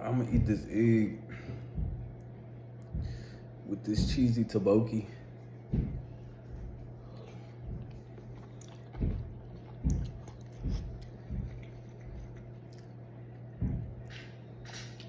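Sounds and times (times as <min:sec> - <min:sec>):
steady low hum: 0:00.0 - 0:15.0
soft low thumps from chewing: 0:00.2 - 0:04.5, 0:05.3 - 0:15.0
chewing food: 0:06.4 - 0:15.0.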